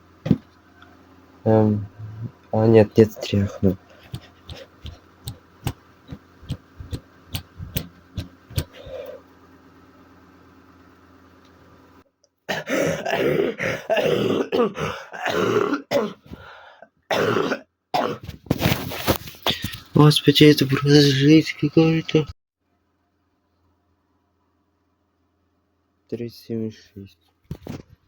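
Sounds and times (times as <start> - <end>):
man coughing and clearing throat: 3.8 - 5.0, 12.5 - 16.4, 17.1 - 18.4
thermometer shaking clicks: 4.0 - 8.8.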